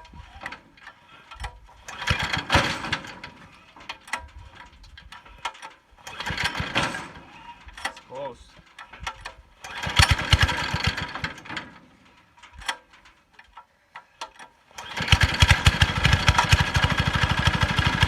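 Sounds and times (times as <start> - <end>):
diesel engine starting and running: 1.1 - 4.1, 6.0 - 7.7, 9.6 - 12.0, 14.7 - 18.0.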